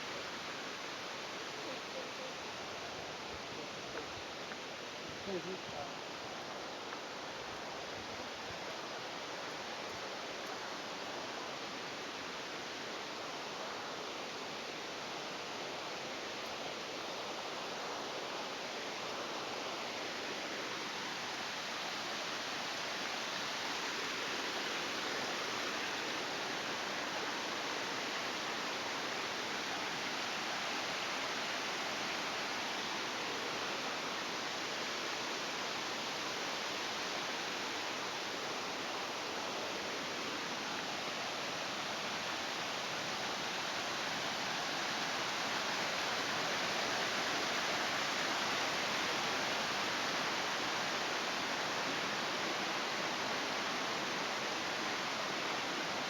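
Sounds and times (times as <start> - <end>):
waterfall rushing: 18.2 - 56.0.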